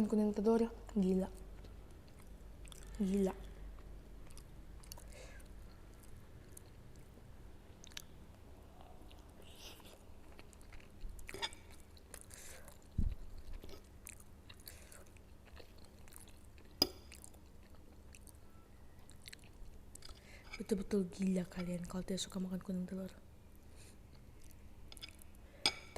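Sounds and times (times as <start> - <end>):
person chewing noodles: 1.4 - 20.4.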